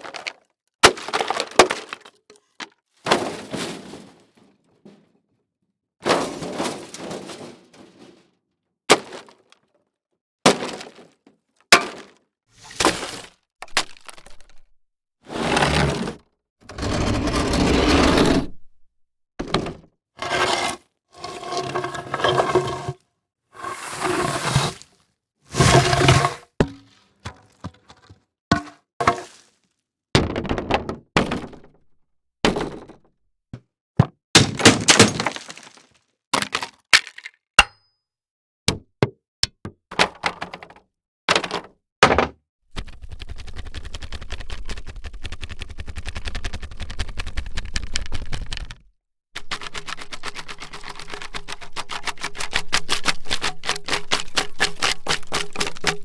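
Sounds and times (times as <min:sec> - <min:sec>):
crashes and breaking hits: 0:34.4 - 0:35.9.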